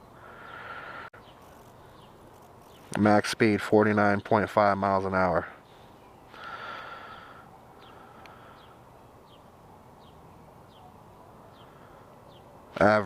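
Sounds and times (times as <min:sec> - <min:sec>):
outdoor background noise: 0:00.0 - 0:13.0
small bird chirping: 0:01.2 - 0:03.1.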